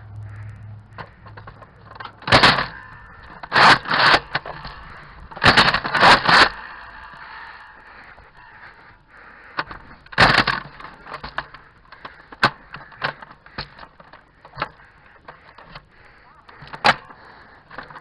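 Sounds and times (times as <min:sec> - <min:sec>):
toy blaster clicks and knocks: 0:01.0 - 0:07.2, 0:09.6 - 0:15.9.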